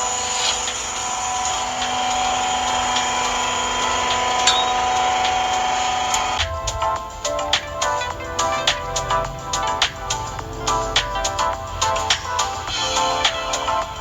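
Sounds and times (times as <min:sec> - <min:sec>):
hydraulic press whining: 0:00.0 - 0:06.4.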